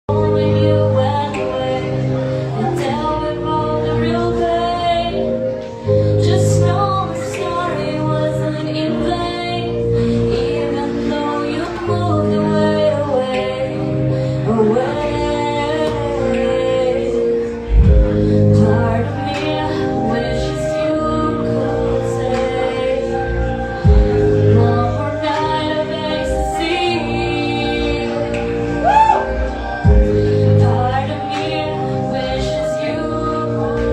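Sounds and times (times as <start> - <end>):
woman singing: 0.1 - 33.9
steady bass: 15.4 - 33.9
sustained chords: 16.2 - 33.9
deep bass hit: 17.7 - 18.7.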